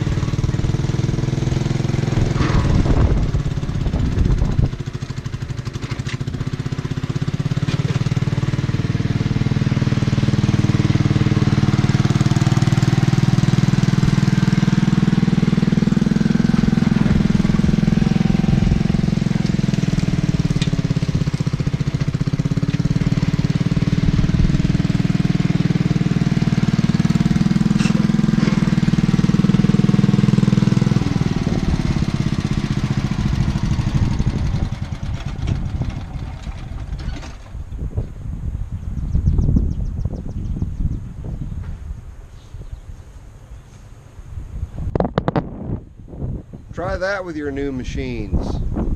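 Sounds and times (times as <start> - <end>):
small engine under load: 0.0 - 37.9.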